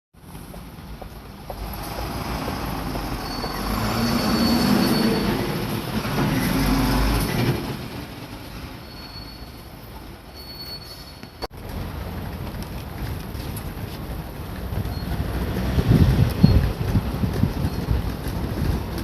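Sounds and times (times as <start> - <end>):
electric train rumble passing: 0.6 - 9.0
high wheel squeal: 2.5 - 7.4, 8.7 - 11.5, 14.7 - 15.6, 17.3 - 18.1.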